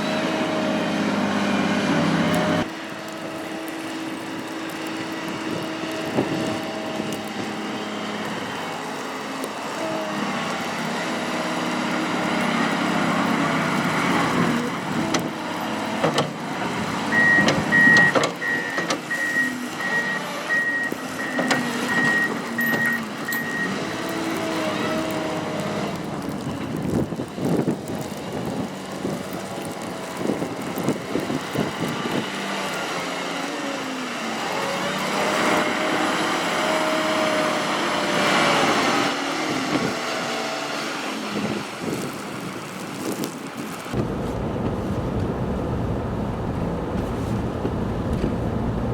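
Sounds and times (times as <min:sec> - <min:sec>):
snow plow truck engines: 0:00.0 - 0:48.9
reversing alarm beeping: 0:17.1 - 0:23.8.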